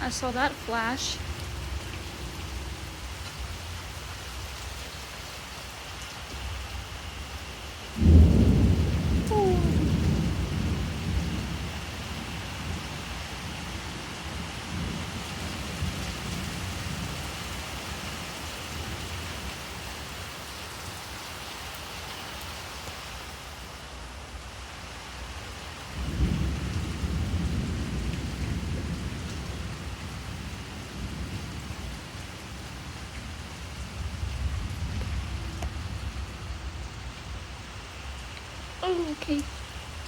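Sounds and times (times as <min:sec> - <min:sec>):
heavy rain falling: 0:00.0 - 0:40.0
loud thunderclap: 0:08.0 - 0:11.7, 0:26.0 - 0:31.7
thunder rumbling: 0:08.0 - 0:17.1, 0:26.0 - 0:32.1, 0:32.8 - 0:37.6.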